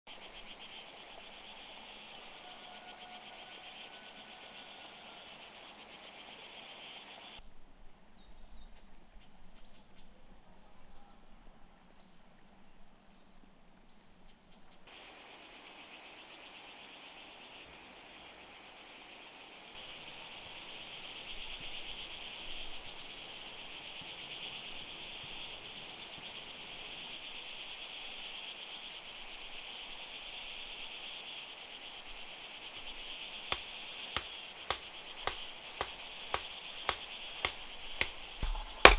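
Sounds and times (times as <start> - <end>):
insects chirping: 0.1 - 10.5, 12.0 - 38.9.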